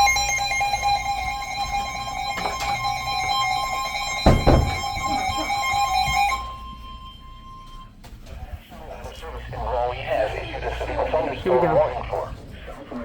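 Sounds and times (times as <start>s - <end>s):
warning message voice: 8.8s - 13.0s.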